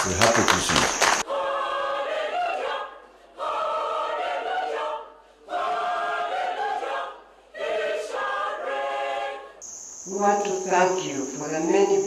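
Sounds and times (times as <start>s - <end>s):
choir singing: 0.0s - 9.6s.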